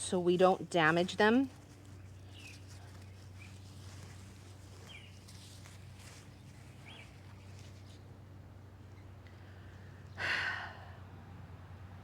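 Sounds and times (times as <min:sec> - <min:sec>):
steady low hum: 0:00.0 - 0:12.0
soft scraping noises: 0:00.4 - 0:09.0.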